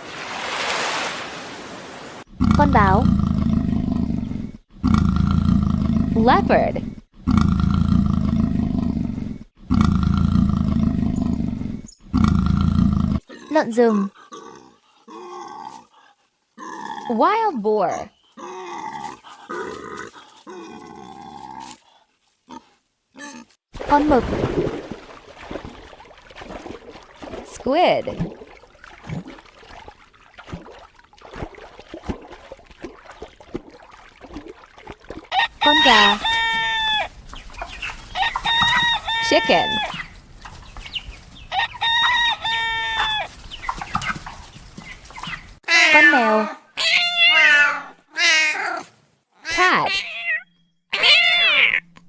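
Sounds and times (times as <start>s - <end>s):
water drips and splashes: 0.0s - 2.3s, 23.8s - 35.4s
faint moving water: 0.0s - 5.0s, 18.3s - 52.0s
leopard growling: 2.3s - 17.2s, 18.3s - 23.6s.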